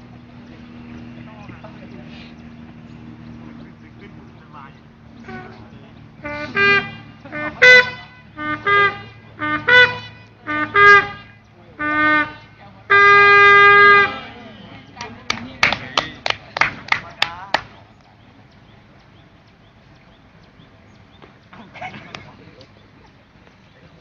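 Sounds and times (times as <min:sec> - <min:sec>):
bugle call: 0:05.2 - 0:15.1.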